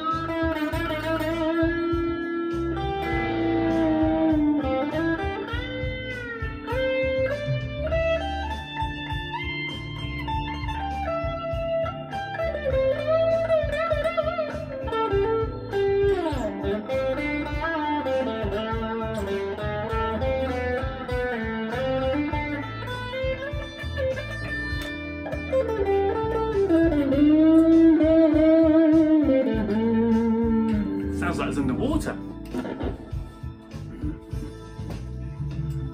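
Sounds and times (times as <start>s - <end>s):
backing track with bass and drums: 0.0s - 35.9s
electric guitar lead: 0.0s - 35.9s.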